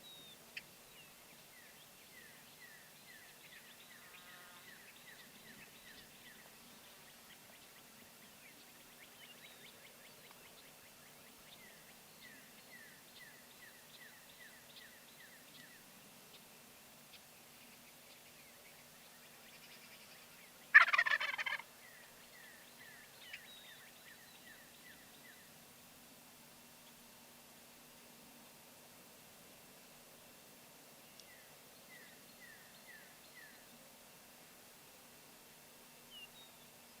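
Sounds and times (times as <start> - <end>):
turkey gobbling: 20.7 - 21.7.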